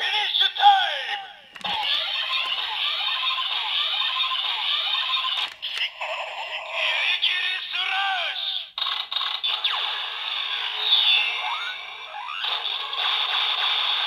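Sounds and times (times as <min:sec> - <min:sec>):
toy electronic voice: 0:00.0 - 0:13.3.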